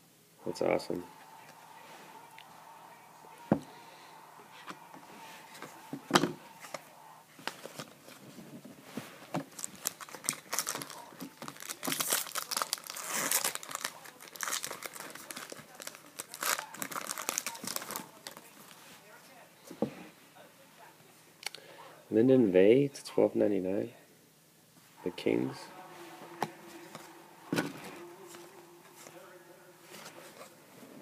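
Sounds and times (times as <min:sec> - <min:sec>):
wrapper tearing and crinkling: 0:09.5 - 0:18.5.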